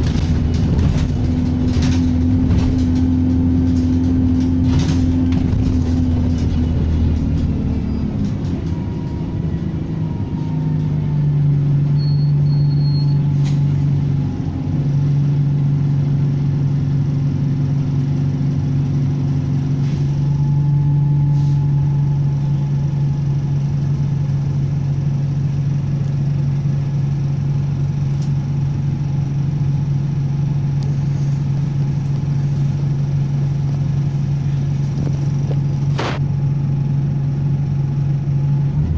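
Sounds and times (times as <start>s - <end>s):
bus diesel engine running: 0.0s - 38.9s
faint turbocharger whistle: 11.8s - 13.3s.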